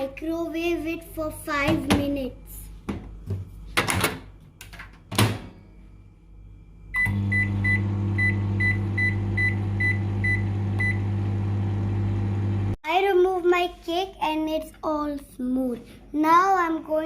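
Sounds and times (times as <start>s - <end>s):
microwave oven humming: 5.0s - 12.8s.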